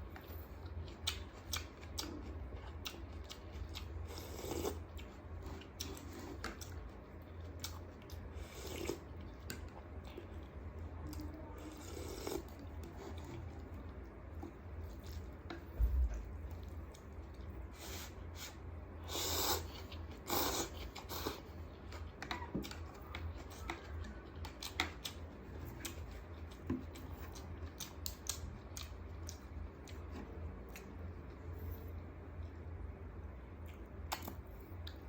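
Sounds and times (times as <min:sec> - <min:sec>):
low steady hum: 0:00.0 - 0:35.0
crunching or slurping: 0:19.1 - 0:21.5.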